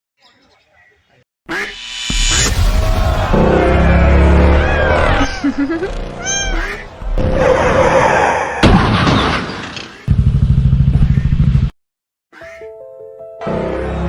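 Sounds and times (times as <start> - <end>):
noisy crash with sharp impact: 1.5 - 7.8
fast low pulsing rumble: 1.5 - 7.9.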